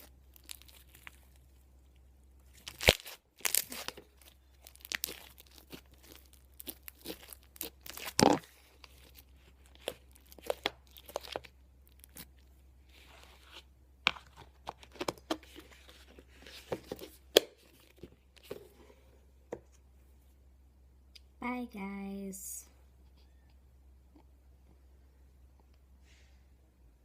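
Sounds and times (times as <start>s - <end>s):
slime squished by hand: 0.0s - 18.5s.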